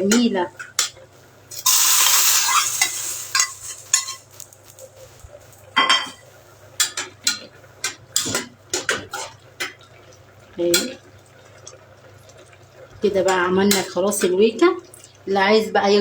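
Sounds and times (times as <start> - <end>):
food sizzling: 1.5 - 5.7.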